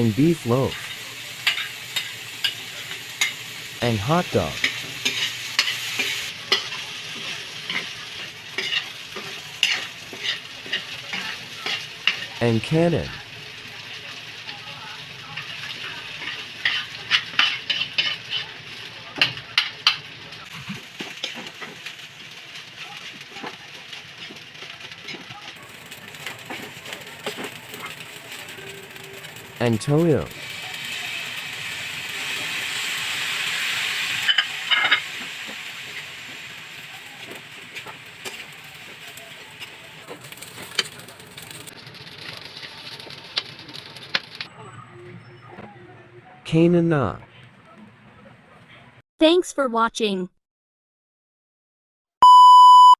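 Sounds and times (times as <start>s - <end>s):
frying hiss: 0.0s - 44.5s
rice sizzling in hot pan: 0.0s - 44.5s
spatula scraping a pan: 4.6s - 12.4s, 15.4s - 20.0s
spatula clattering against pan: 8.5s - 12.3s, 16.2s - 18.5s.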